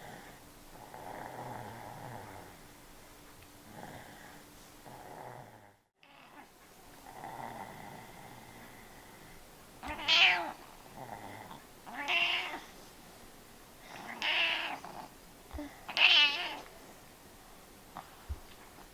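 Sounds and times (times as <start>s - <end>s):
quiet breathing: 0.0s - 2.7s, 3.6s - 5.9s, 7.0s - 9.7s.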